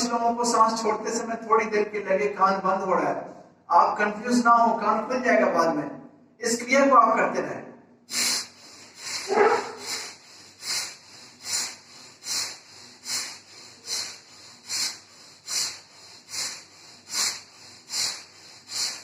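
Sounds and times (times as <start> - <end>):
forceful breathing through nostril: 8.1 - 19.0.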